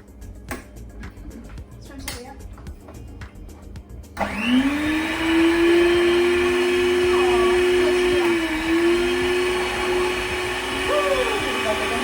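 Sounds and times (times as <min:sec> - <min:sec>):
electric hand mixer running: 0:04.2 - 0:12.0.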